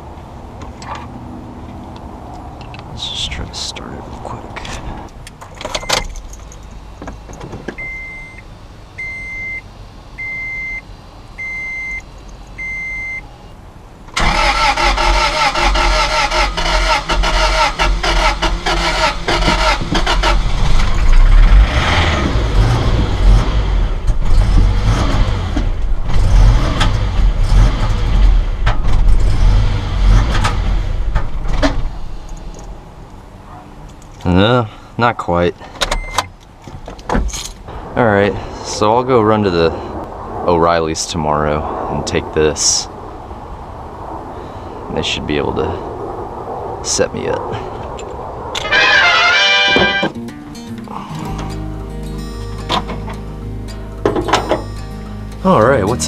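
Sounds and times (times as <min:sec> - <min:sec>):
dashboard warning chimes: 0:07.7 - 0:13.3
starter cranking engine: 0:14.2 - 0:21.0.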